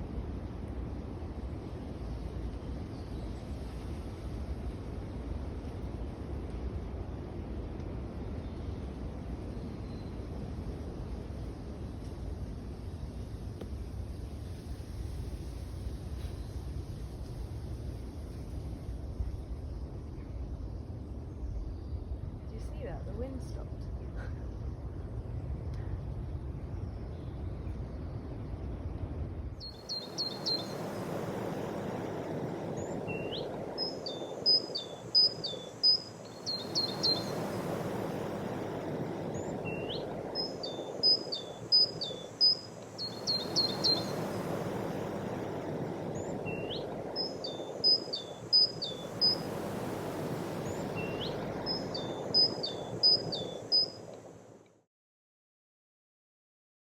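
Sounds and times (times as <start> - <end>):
wind rumble on microphone: 0.0 - 54.6
songbird singing: 29.6 - 54.1
steady background hiss: 29.6 - 54.5.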